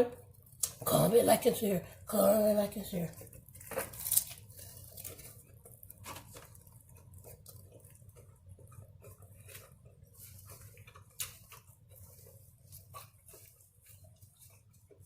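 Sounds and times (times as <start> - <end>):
person chewing food: 3.1 - 15.0.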